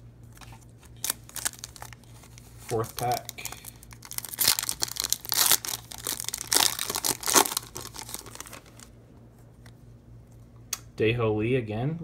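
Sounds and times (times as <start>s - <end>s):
foil wrapper tearing and crinkling: 0.3s - 8.9s.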